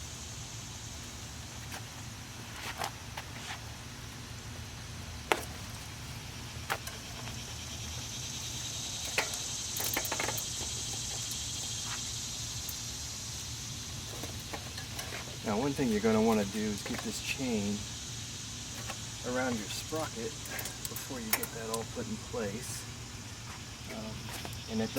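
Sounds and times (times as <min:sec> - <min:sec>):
insects chirring: 0:00.0 - 0:24.9
bicycle wheel clicks and taps: 0:08.6 - 0:12.8.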